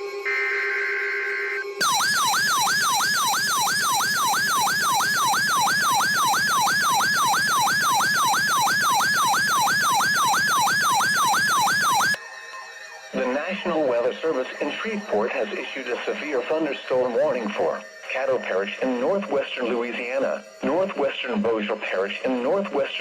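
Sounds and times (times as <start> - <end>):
electronic alert siren wailing: 0.2 - 12.2.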